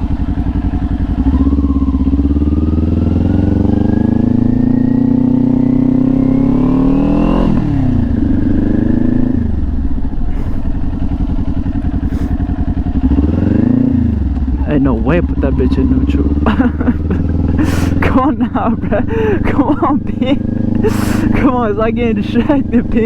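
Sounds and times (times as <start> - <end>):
motorcycle engine accelerating: 0.0 - 23.0.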